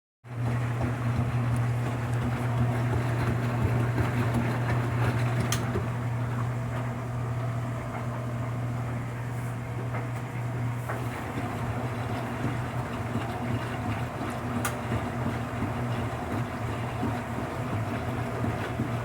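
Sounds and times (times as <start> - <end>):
washing machine motor hum: 0.2 - 19.0
washing machine click: 0.8 - 6.0.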